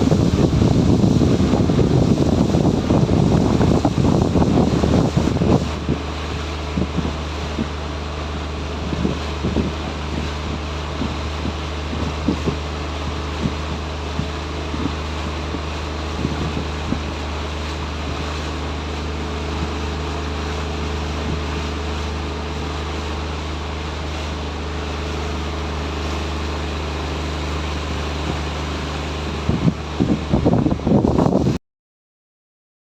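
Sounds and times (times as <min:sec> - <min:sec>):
boat engine running: 0:00.0 - 0:31.6
wind noise on microphone: 0:00.0 - 0:31.6.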